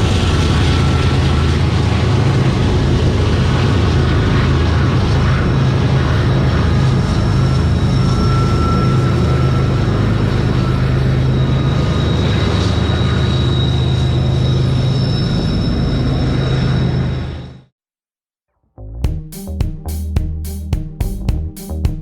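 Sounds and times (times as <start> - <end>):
diesel locomotive engine drone: 0.0 - 17.5.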